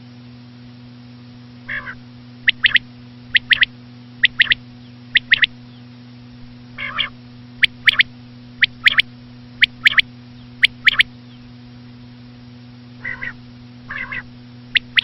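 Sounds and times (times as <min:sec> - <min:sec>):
quail calling: 0:01.7 - 0:04.6, 0:05.2 - 0:05.6, 0:06.8 - 0:11.1, 0:13.0 - 0:15.0.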